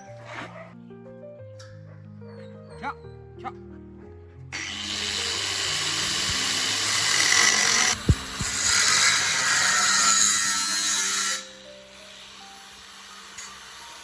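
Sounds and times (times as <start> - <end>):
abrasive disc cutting steel: 4.6 - 14.0.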